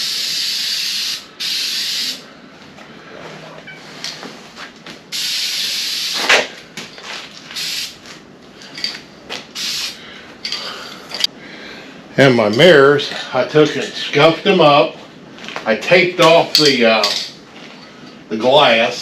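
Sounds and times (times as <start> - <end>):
aerosol spray can hissing: 0.0 - 2.2, 9.6 - 10.0.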